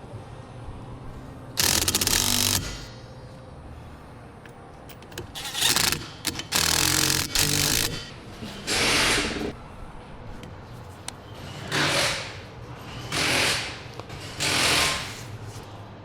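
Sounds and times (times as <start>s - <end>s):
power tool bursts: 1.6s - 2.9s, 5.4s - 8.1s.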